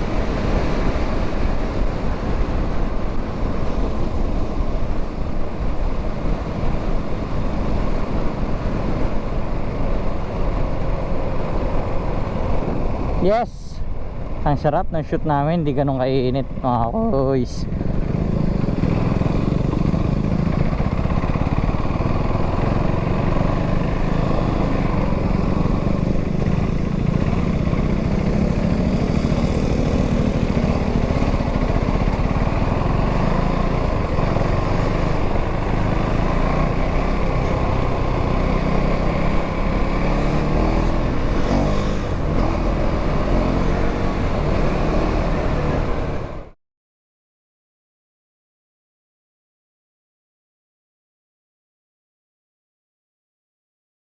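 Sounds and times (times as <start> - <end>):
motorcycle engine running: 17.4 - 46.5.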